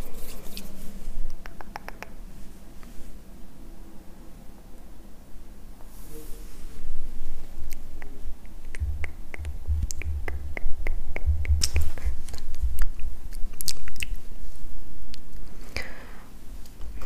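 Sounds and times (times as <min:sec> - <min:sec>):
low thuds: 0:08.8 - 0:13.1.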